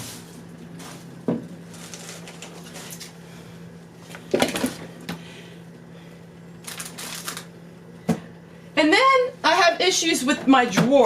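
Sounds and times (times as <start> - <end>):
refrigerator hum: 0.0 - 11.0
containers clattering in fridge: 4.1 - 5.2.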